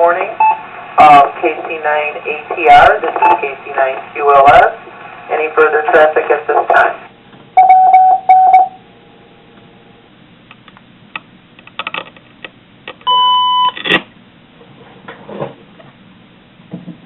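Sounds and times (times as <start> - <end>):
radio static crackles: 0.0 - 7.1
short loud beeps: 7.6 - 8.8, 13.1 - 13.8
two-tone beep: 7.6 - 8.8, 13.1 - 13.8.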